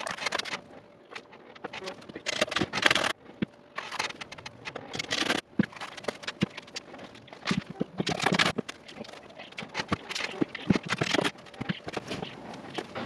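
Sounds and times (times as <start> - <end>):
knocks and clicks: 0.0 - 13.0.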